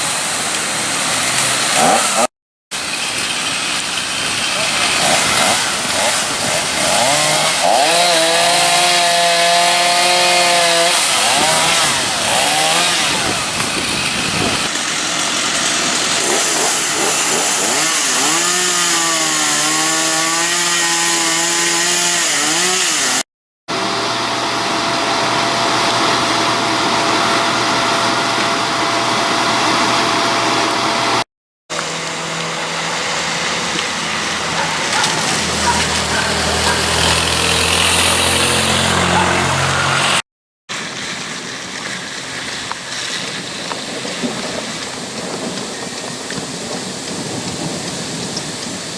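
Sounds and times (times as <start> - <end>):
chainsaws revving: 1.2 - 40.2
steady engine drone: 11.2 - 18.0, 23.7 - 48.9.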